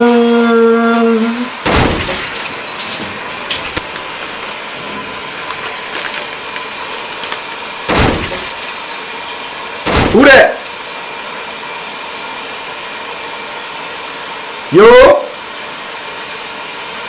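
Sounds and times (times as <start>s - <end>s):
shower water running: 0.8s - 11.1s
loud thumps: 1.6s - 8.9s, 9.9s - 10.6s.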